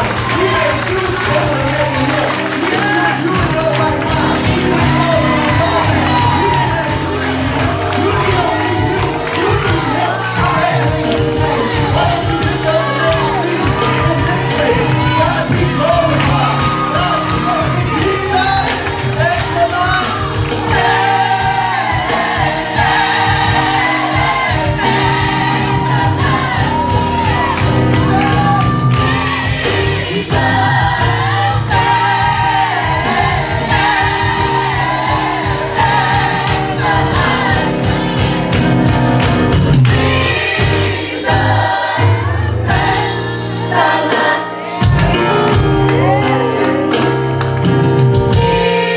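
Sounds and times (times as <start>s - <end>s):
gospel singing with band: 0.0s - 48.9s.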